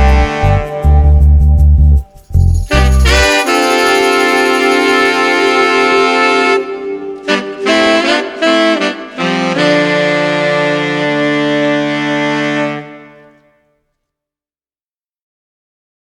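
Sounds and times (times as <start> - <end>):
background music held chord: 0.1 - 13.4.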